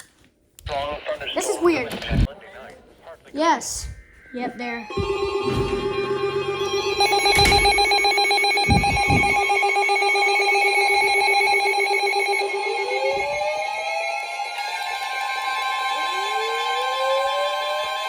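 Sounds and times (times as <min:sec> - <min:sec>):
steady electronic alarm tone: 0:04.0 - 0:18.0
fast-pulsing high tone: 0:04.3 - 0:17.6.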